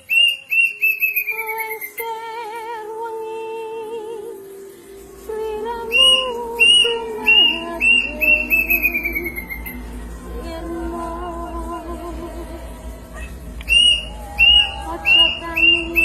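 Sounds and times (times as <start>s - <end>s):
bird whistling call: 0.0s - 2.1s, 5.9s - 9.8s, 13.6s - 16.0s
background music with sustained tones: 0.0s - 16.0s.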